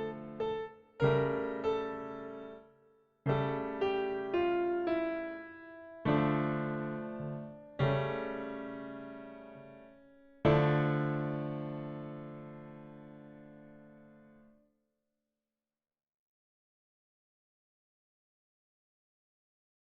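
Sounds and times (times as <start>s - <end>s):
slow dark piano piece: 0.0s - 14.6s.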